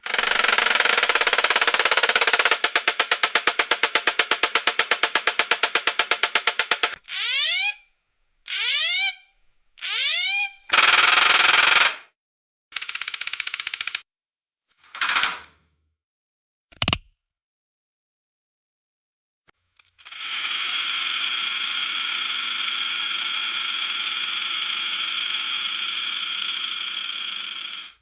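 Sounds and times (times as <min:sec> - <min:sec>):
small fan motor buzzing: 0:00.0 - 0:07.8, 0:08.5 - 0:09.2, 0:09.8 - 0:10.9.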